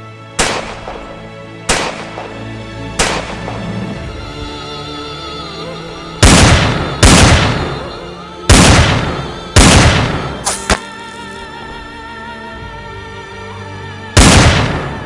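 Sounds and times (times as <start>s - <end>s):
background music: 0.0s - 15.0s
short sharp cracks: 0.4s - 3.6s, 8.5s - 10.9s
loud bangs: 0.4s - 3.8s, 6.2s - 7.8s, 8.5s - 10.8s, 14.2s - 15.0s.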